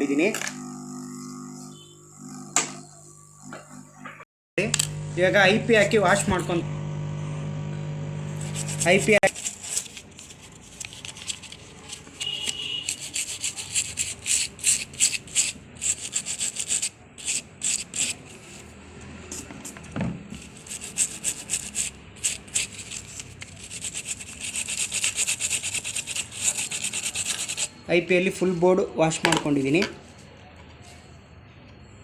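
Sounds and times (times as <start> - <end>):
brisk scrubbing of circuit board: 8.3 - 27.8.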